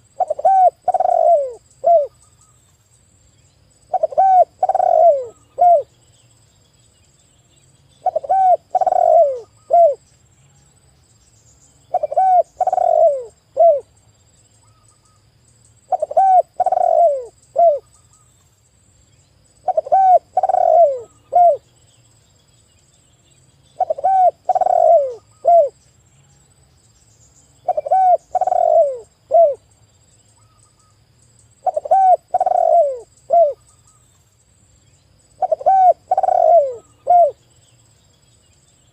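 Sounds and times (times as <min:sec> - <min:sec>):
dove cooing: 0:00.0 - 0:02.2, 0:03.9 - 0:05.9, 0:08.0 - 0:10.0, 0:11.9 - 0:13.9, 0:15.9 - 0:17.9, 0:19.6 - 0:21.7, 0:23.8 - 0:25.8, 0:27.6 - 0:29.6, 0:31.6 - 0:33.6, 0:35.4 - 0:37.4.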